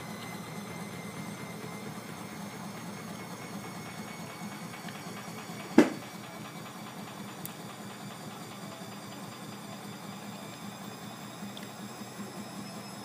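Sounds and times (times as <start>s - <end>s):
washing machine humming: 0.0s - 13.0s
sharp knock: 5.8s - 6.0s.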